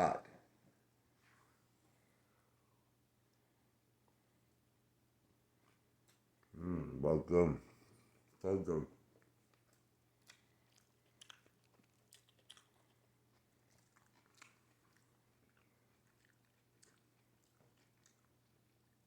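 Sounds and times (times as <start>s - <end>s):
chewing and biting pizza: 9.2s - 19.0s.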